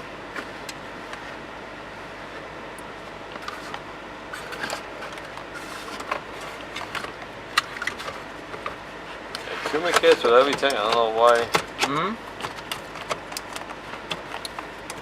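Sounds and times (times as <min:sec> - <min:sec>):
steady low hum: 0:00.0 - 0:15.0
clicks and knocks of handled parts: 0:09.4 - 0:15.0.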